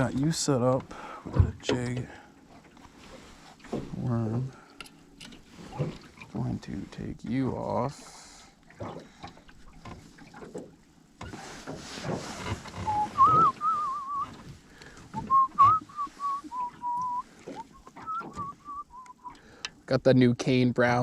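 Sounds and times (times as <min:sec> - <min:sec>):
man whistling a tune: 0:12.8 - 0:14.4, 0:15.1 - 0:19.4.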